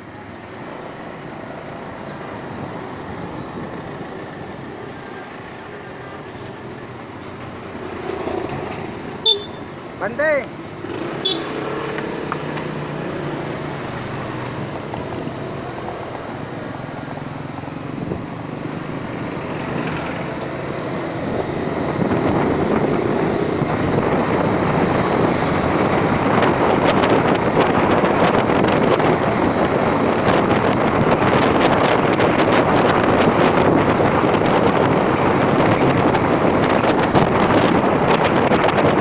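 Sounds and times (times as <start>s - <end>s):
wind buffeting microphone: 11.9s - 39.0s.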